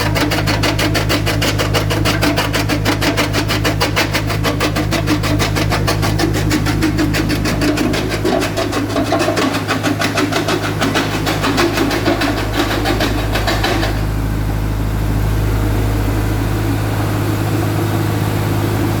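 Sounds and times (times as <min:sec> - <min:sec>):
rapid even clatter: 0:00.0 - 0:14.2
jaw crusher humming: 0:00.0 - 0:14.8.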